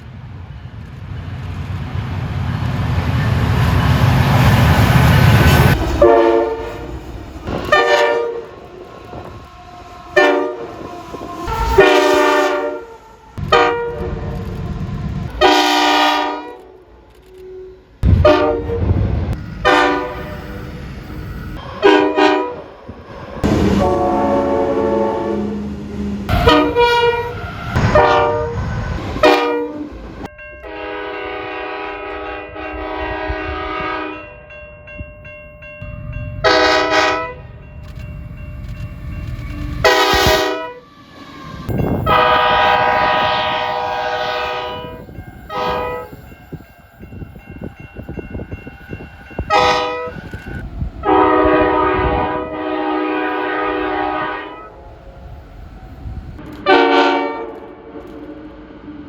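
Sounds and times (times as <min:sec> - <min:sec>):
low train rumble: 0:00.0 - 0:59.0
train horn blasts: 0:05.7 - 0:09.4, 0:10.1 - 0:14.5, 0:15.3 - 0:22.7, 0:23.4 - 0:30.0, 0:30.6 - 0:34.3, 0:36.4 - 0:37.5, 0:39.8 - 0:40.8, 0:41.7 - 0:47.1, 0:49.3 - 0:55.3, 0:56.4 - 0:58.6.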